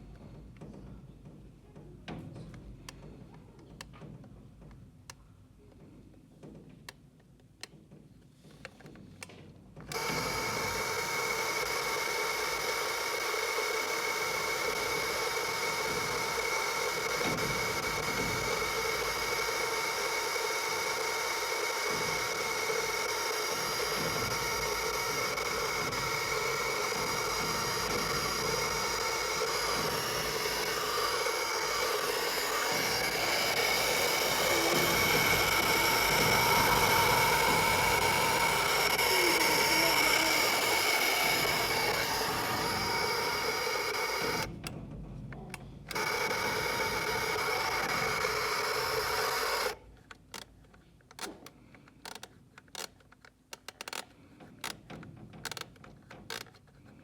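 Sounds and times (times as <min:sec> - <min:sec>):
alarm clock ticking: 0:09.9 - 0:44.5, 0:45.9 - 0:49.8
alarm buzzer: 0:10.0 - 0:44.5.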